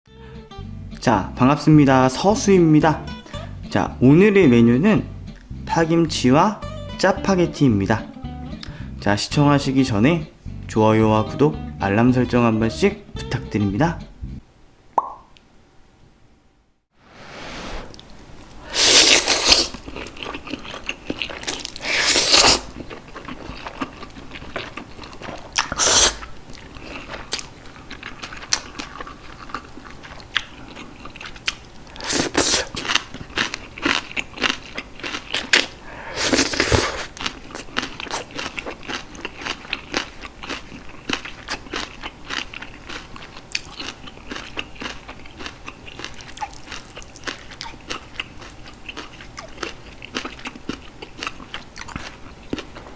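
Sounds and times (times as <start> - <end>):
loud bites and slurps: 18.7 - 19.8, 21.4 - 22.7, 32.0 - 32.9, 35.4 - 37.2
wet chewing: 18.9 - 52.9.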